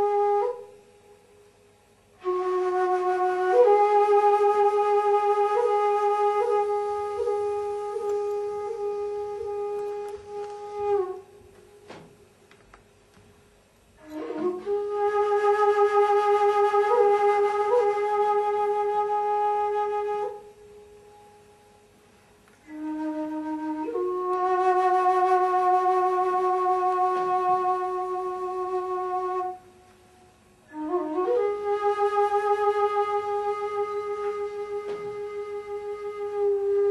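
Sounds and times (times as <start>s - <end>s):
wind instrument long notes: 0.0s - 1.4s, 2.2s - 12.1s, 14.0s - 21.9s, 22.6s - 36.9s.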